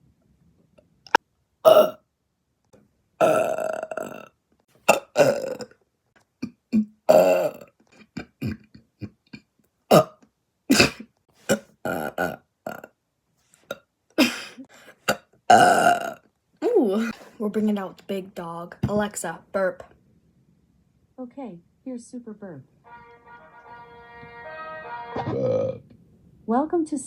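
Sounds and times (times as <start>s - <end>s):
person burping: 1.1s - 2.0s, 3.2s - 5.7s, 6.4s - 12.9s, 14.2s - 17.2s, 25.2s - 25.8s.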